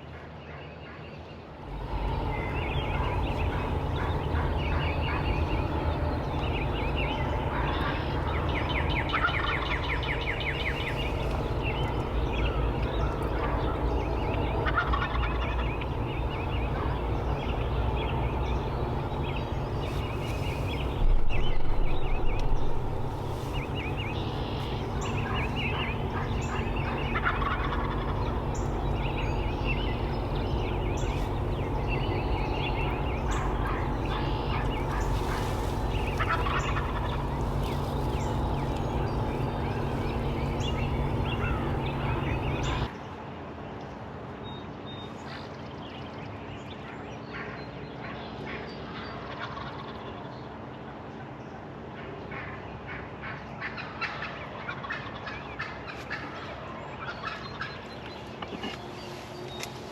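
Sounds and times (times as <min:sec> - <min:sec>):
low rumble: 0:01.6 - 0:42.9
turkeys gobbling: 0:01.7 - 0:42.9, 0:49.2 - 0:49.9, 0:53.6 - 0:57.8.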